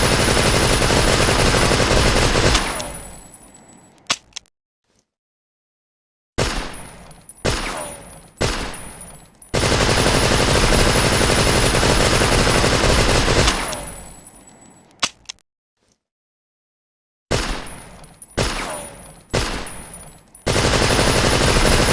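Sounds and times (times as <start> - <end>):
automatic gunfire burst: 0.0 - 2.8, 9.6 - 13.7, 20.5 - 21.9.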